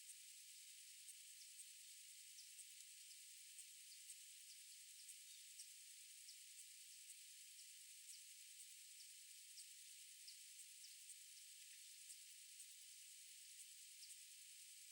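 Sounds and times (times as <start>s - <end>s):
faint high ticks: 11.4s - 11.9s.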